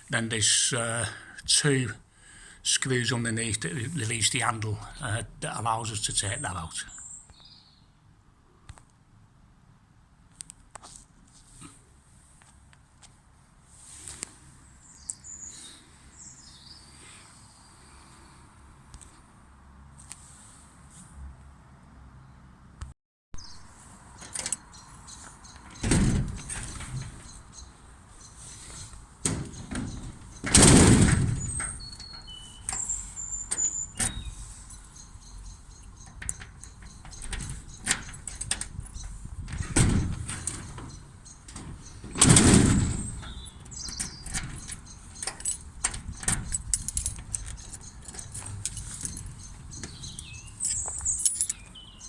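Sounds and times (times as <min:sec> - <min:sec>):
metal clicks taps and rattles: 0:24.2 - 0:24.6, 0:25.6 - 0:27.4, 0:28.7 - 0:34.9, 0:35.8 - 0:51.6
heavy metal clunks: 0:24.2 - 0:51.8.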